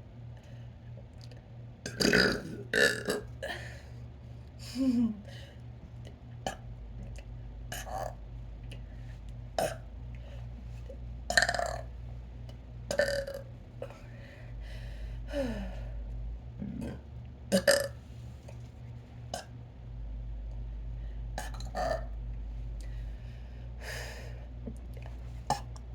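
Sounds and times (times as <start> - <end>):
steady low hum: 0.0 - 25.9
person burping: 1.9 - 3.8, 9.6 - 9.8, 11.3 - 11.9, 12.9 - 13.4, 16.6 - 18.0, 21.4 - 22.1.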